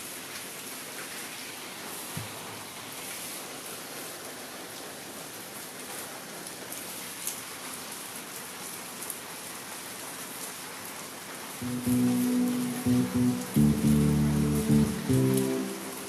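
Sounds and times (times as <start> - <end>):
rain falling steadily: 0.0 - 16.0
raindrop ticks: 11.6 - 15.6.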